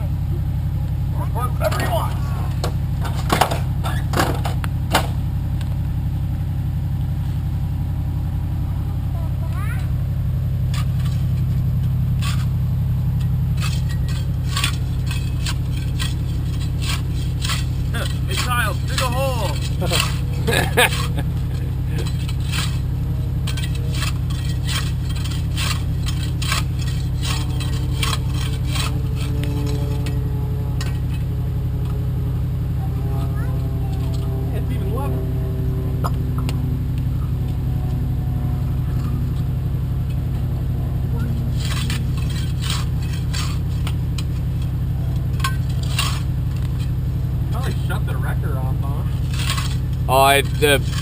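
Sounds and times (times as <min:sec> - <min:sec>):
truck engine idling: 0:00.0 - 0:51.0
clattering knocks: 0:01.6 - 0:05.3
shovel scraping dirt and gravel: 0:10.6 - 0:32.0, 0:36.8 - 0:51.0.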